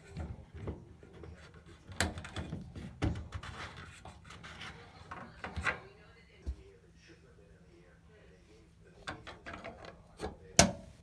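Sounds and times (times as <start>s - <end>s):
plastic rubbing and scraping: 0.0s - 5.8s.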